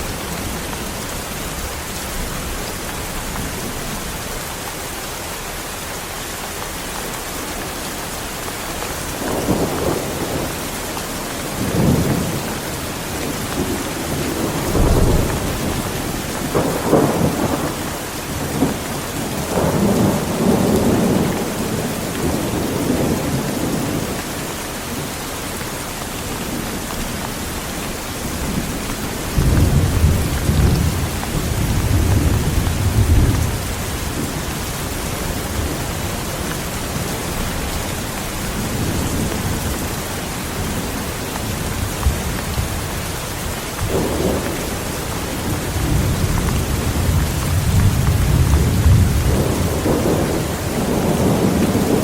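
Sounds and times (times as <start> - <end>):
heavy rain: 0.0 - 52.0
thunder rumbling: 8.6 - 24.3, 26.4 - 52.0.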